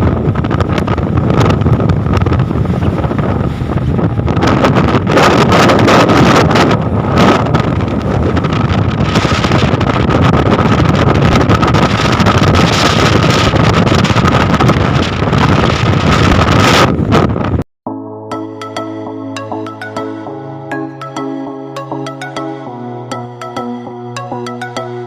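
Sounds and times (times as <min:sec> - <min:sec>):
storm wind buffeting microphone: 0:00.0 - 0:17.6.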